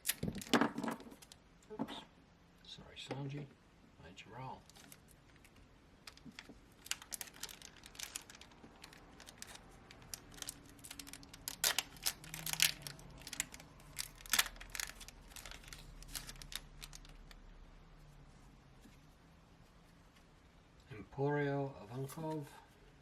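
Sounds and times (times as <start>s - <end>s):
foil pack crinkling and tearing: 6.1s - 17.4s.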